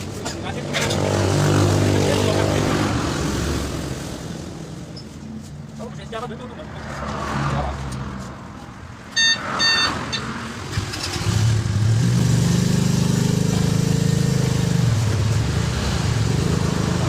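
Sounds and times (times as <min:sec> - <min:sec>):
short horn beeps: 0:09.1 - 0:10.3.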